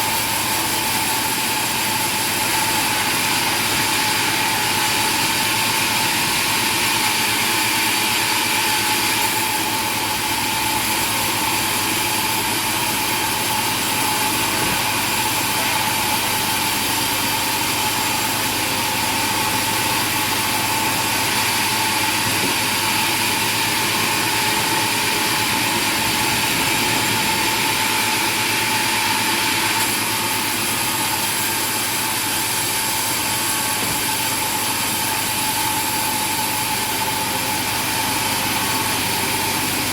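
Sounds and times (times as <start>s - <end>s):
machine drone with high whine: 0.0s - 39.9s.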